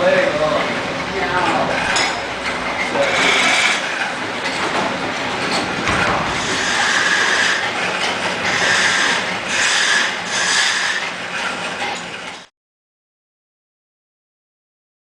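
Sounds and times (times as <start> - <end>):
treadle machine clattering: 0.0 - 9.5, 11.0 - 12.5.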